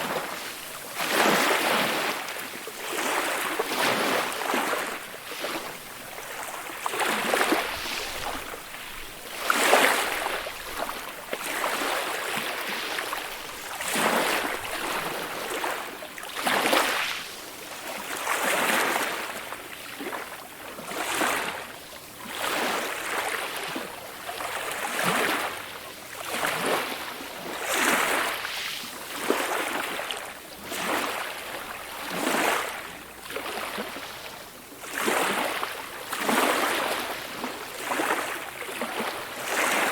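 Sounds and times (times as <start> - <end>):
ocean waves washing in: 27.5 - 29.9.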